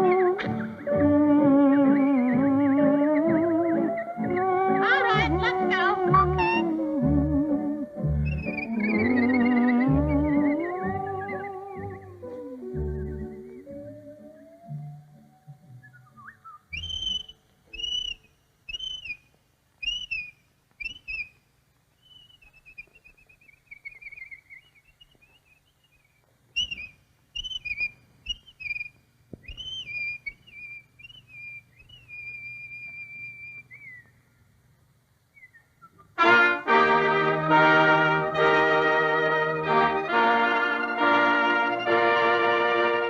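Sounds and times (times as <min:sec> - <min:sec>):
whistled bird chirps: 0:00.0 - 0:05.3, 0:06.1 - 0:07.0, 0:07.6 - 0:21.4, 0:22.0 - 0:34.2, 0:35.3 - 0:36.2
low steady soundtrack hum: 0:00.0 - 0:19.6, 0:30.5 - 0:43.0.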